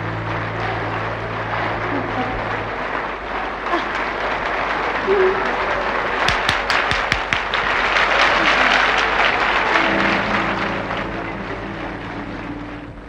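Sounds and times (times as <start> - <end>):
band holding a chord: 0.0 - 3.6
audience applauding: 0.0 - 13.0.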